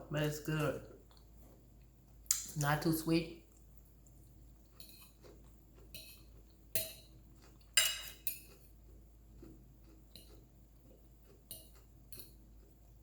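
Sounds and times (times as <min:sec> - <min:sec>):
utensils clinking on a plate: 0:05.9 - 0:08.7.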